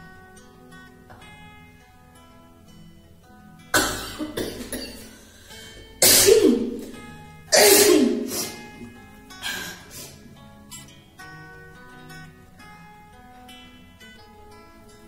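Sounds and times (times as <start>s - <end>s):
soft acoustic guitar music: 0.0s - 15.0s
woman sneezing: 6.0s - 10.2s.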